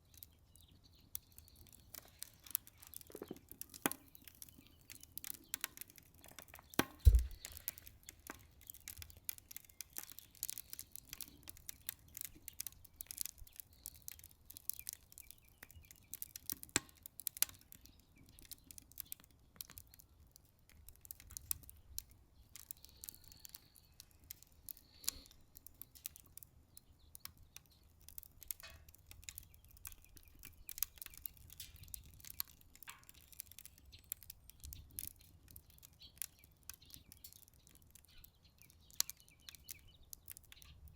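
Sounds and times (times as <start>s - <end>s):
wood fire crackling: 0.0s - 40.9s
low thump: 7.1s - 7.5s.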